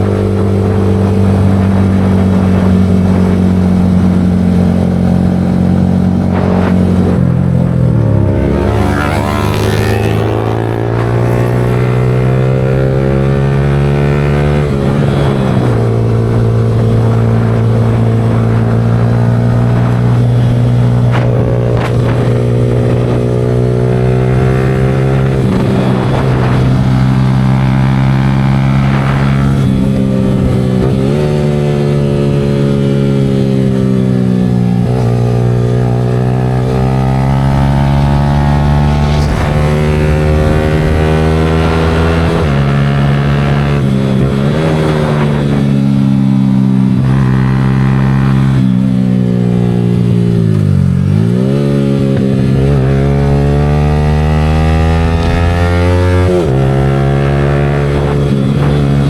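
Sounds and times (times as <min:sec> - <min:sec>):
motorcycle engine shifting gears: 0:00.0 - 0:59.0.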